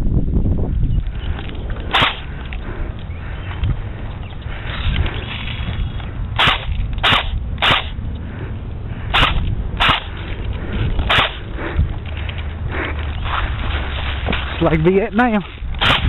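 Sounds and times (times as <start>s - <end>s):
airsoft gun shots: 1.9s - 2.3s, 6.4s - 8.0s, 9.1s - 10.1s, 11.1s - 11.4s, 15.8s - 16.0s.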